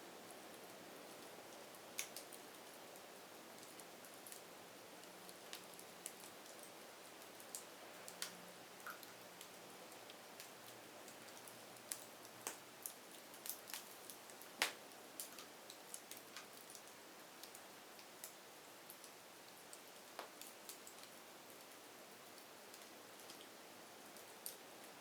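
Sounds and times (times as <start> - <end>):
faint steady hiss: 0.0 - 25.0
firewood crackling and popping: 3.8 - 21.1.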